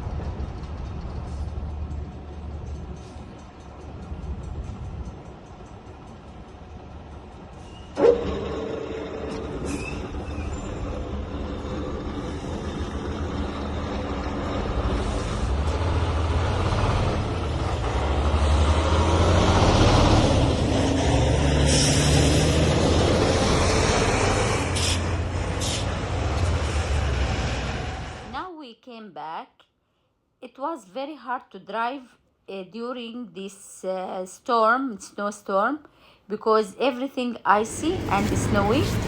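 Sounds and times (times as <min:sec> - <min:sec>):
vehicle engine rumble: 0:00.0 - 0:28.3, 0:37.5 - 0:39.0
road noise: 0:00.0 - 0:28.4, 0:37.5 - 0:39.0.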